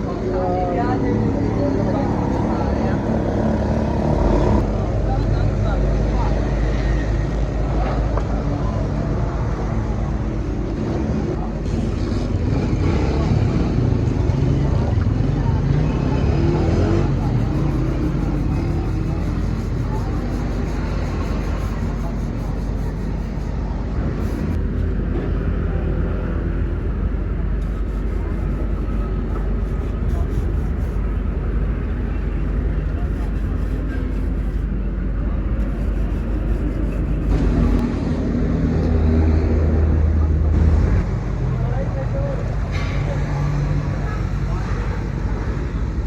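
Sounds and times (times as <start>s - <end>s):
engine humming: 13.6s - 37.8s.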